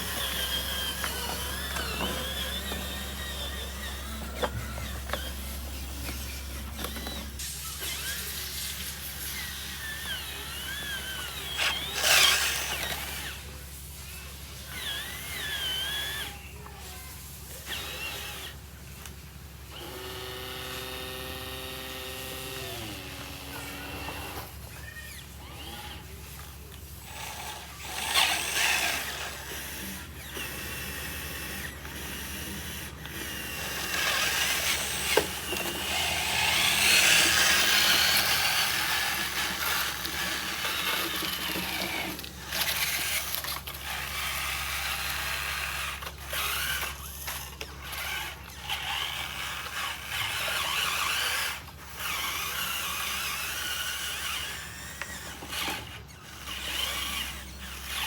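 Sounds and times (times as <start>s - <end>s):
small electric motors whirring: 0.0s - 58.0s.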